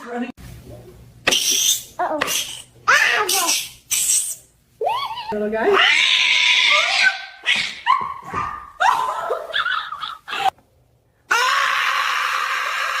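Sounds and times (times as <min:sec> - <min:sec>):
animal yowls and cries: 0:04.8 - 0:10.4, 0:11.3 - 0:13.0.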